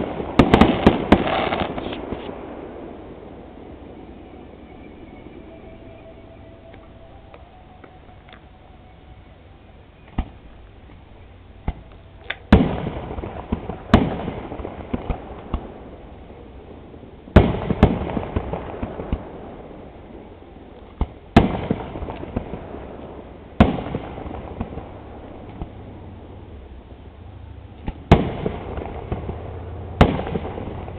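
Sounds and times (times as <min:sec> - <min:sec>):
loud firework bangs: 0:00.0 - 0:05.4, 0:11.6 - 0:19.9, 0:21.0 - 0:25.8, 0:27.8 - 0:30.9
firework crackling: 0:00.0 - 0:30.9.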